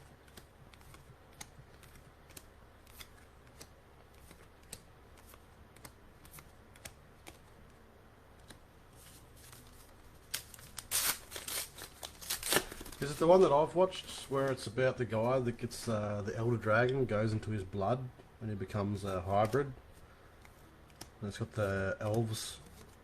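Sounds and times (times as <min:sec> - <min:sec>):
cards rustling: 0:00.0 - 0:07.8, 0:08.4 - 0:15.9, 0:18.5 - 0:23.0
cards clicking together: 0:00.3 - 0:07.5, 0:20.4 - 0:21.2.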